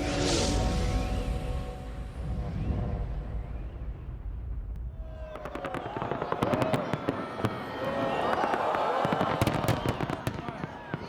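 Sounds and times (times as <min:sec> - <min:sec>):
music: 0:00.0 - 0:04.6
low rumble: 0:00.0 - 0:05.3
fireworks crackling: 0:04.5 - 0:11.0.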